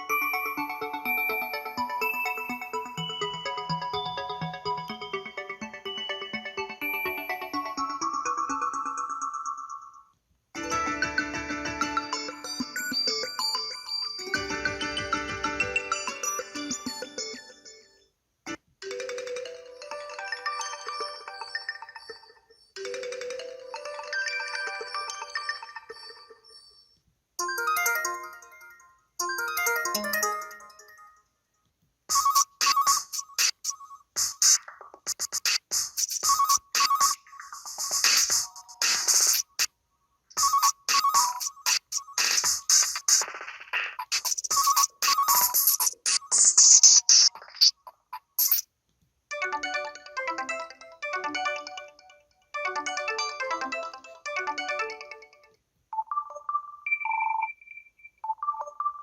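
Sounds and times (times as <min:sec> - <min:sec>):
bell-like phone ringtone: 0:10.6 - 0:31.3, 0:49.3 - 0:59.0.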